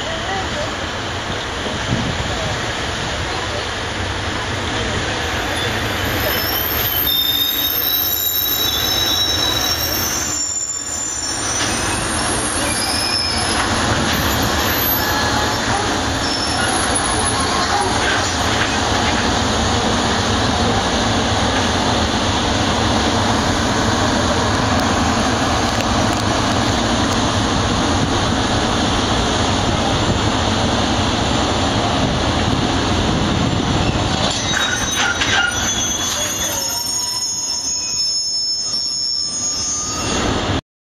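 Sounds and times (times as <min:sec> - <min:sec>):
freight train rumbling on rails: 0:00.0 - 0:40.6
high thin squealing: 0:05.6 - 0:18.5, 0:33.8 - 0:40.3.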